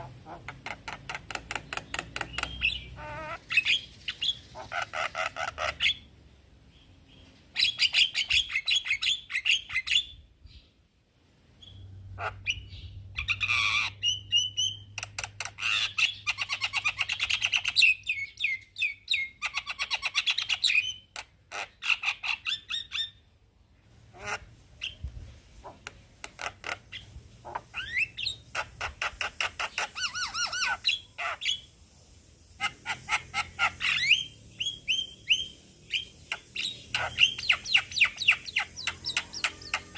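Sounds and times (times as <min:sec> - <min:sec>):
bird singing harsh chatter: 0:00.0 - 0:06.1, 0:11.6 - 0:23.2, 0:26.2 - 0:31.7, 0:32.5 - 0:39.9.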